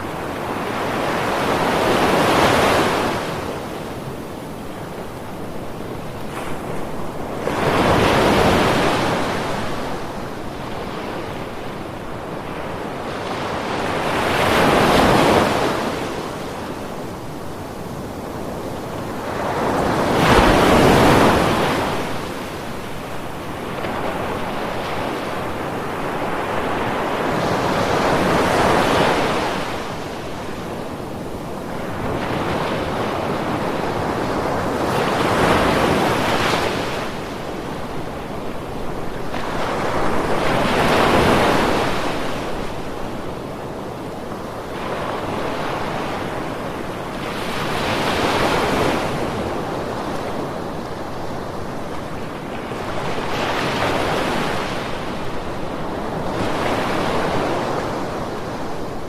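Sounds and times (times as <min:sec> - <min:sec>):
ocean waves breaking: 0:00.0 - 0:30.6.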